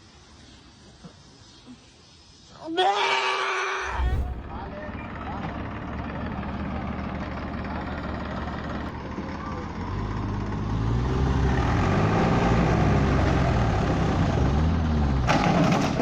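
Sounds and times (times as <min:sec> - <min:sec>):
heavy vehicle engine revving: 0:10.4 - 0:15.9.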